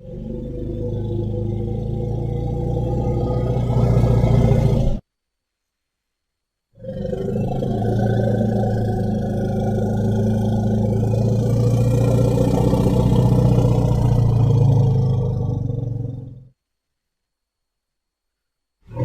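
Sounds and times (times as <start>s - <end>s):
elephant rumbling growl: 0.0s - 5.0s, 6.8s - 16.5s.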